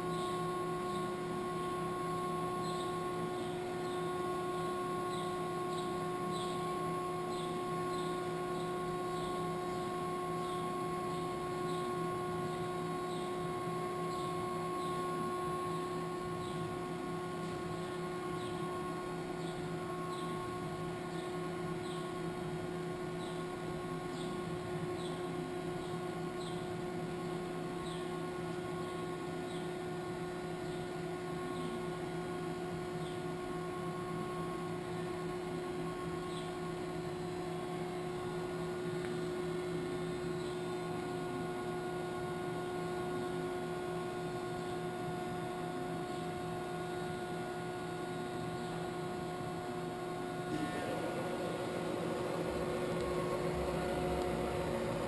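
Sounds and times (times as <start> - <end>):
machining center motor hum: 0.0 - 55.0.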